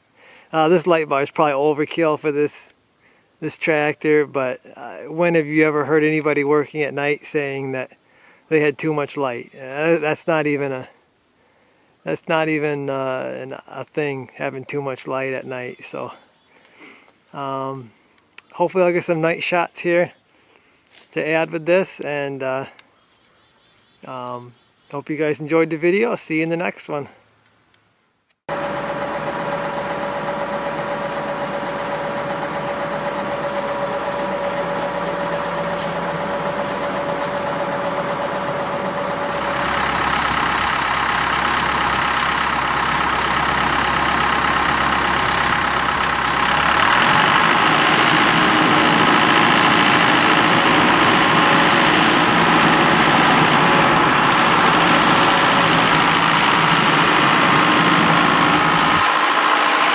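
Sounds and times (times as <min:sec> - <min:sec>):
tractor diesel engine running: 0:28.5 - 0:59.9.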